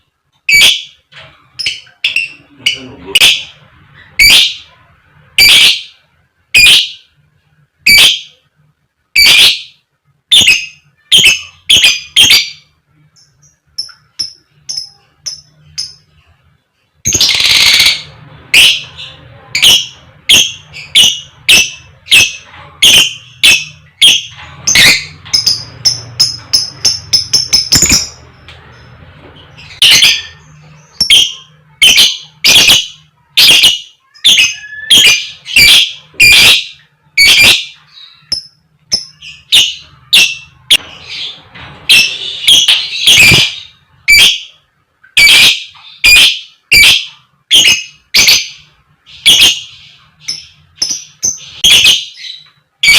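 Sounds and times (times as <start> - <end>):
high bird chirps: 0.5 - 4.8, 5.4 - 6.0, 6.6 - 7.2, 7.9 - 8.4, 9.2 - 16.2, 17.1 - 52.9
lovebird loud sharp calls: 31.0 - 38.4, 41.9 - 44.5, 45.2 - 48.6.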